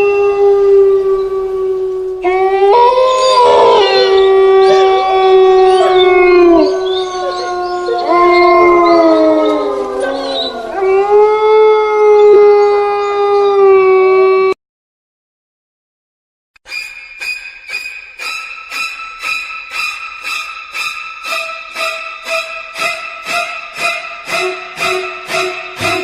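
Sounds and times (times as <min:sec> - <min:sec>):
high gliding cries: 0:02.2 - 0:11.4, 0:16.7 - 0:26.0.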